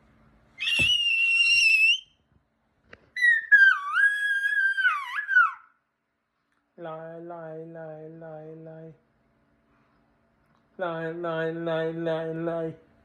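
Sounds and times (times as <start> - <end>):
baby squealing: 0.6 - 2.1, 3.1 - 5.8.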